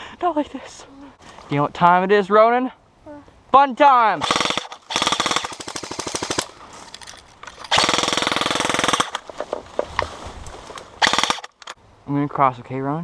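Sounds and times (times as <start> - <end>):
airsoft gun full-auto bursts: 4.2 - 6.5, 7.7 - 9.2, 11.0 - 11.7.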